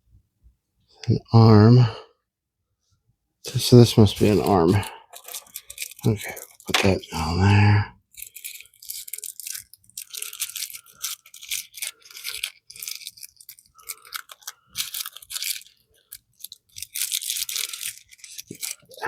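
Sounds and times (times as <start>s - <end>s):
packaging crinkling and rustling: 4.0s - 7.0s, 8.1s - 19.0s.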